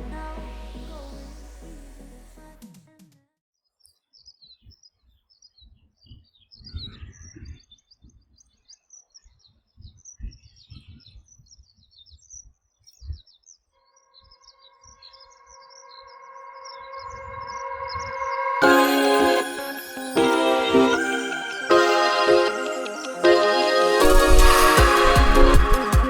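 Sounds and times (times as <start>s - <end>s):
steady pitched tone: 0.0s - 2.6s, 16.0s - 26.0s.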